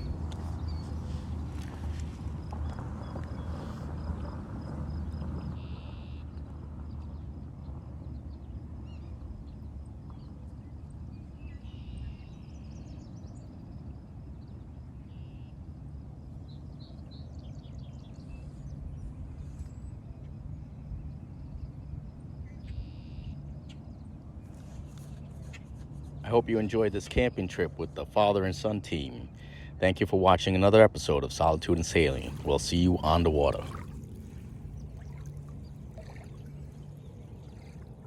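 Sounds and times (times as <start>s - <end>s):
birds chirping: 0.0s - 4.4s, 30.5s - 38.0s
low rumble of shore ambience: 0.0s - 38.0s.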